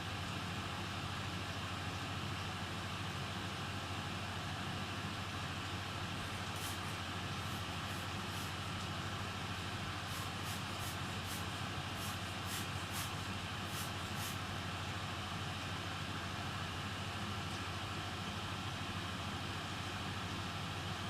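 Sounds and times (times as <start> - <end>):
hot-air tool blowing: 6.2 - 8.8, 9.9 - 14.5.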